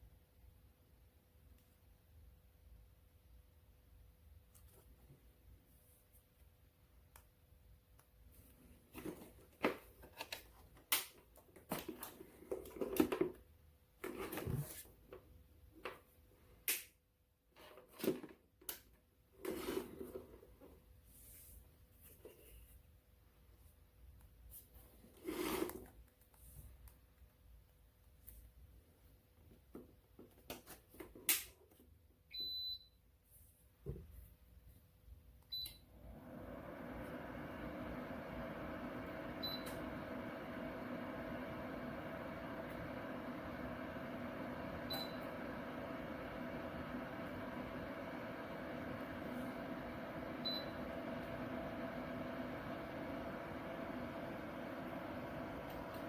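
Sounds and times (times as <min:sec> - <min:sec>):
faint steady hum: 0:35.4 - 0:56.0.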